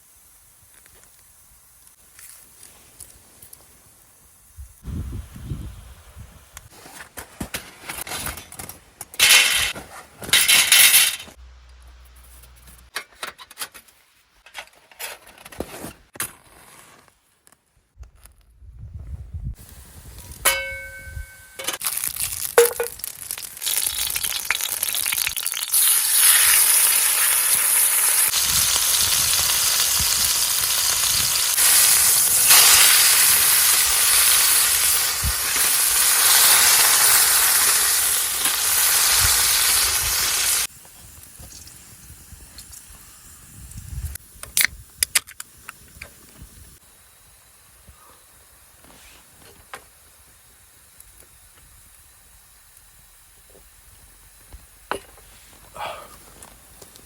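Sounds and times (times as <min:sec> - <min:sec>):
steak sizzling over a fire: 0:00.0 - 0:04.8, 0:21.8 - 0:54.9.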